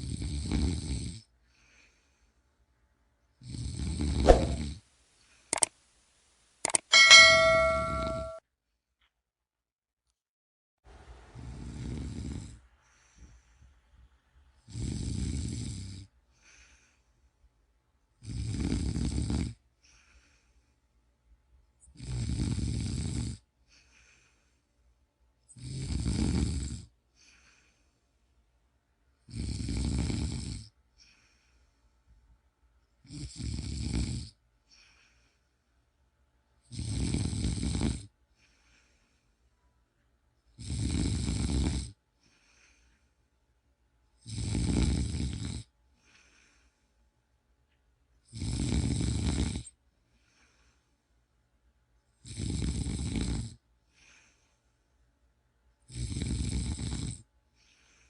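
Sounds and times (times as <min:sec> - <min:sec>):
person snoring: 0:00.0 - 0:01.2, 0:03.4 - 0:04.8, 0:11.5 - 0:12.6, 0:14.7 - 0:16.1, 0:18.2 - 0:19.6, 0:25.5 - 0:26.9, 0:36.7 - 0:38.1, 0:40.6 - 0:42.0, 0:44.2 - 0:45.7, 0:48.3 - 0:49.7, 0:52.2 - 0:53.6, 0:55.9 - 0:57.2.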